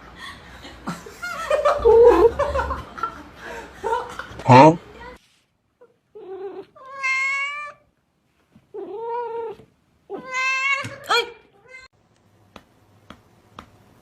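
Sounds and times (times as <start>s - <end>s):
cat meowing: 8.8s - 11.0s.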